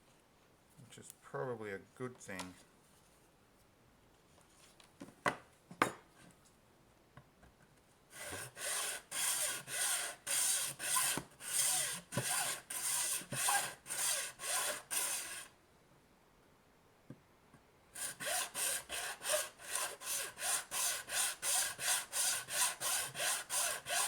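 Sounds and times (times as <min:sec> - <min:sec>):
hacksaw cutting plastic: 0:08.2 - 0:15.5, 0:18.0 - 0:24.0.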